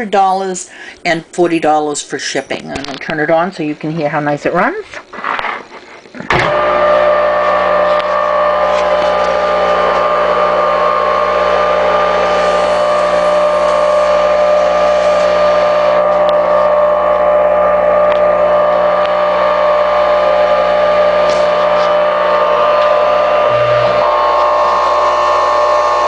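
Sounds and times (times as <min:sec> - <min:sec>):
table saw motor humming: 0:05.3 - 0:26.0.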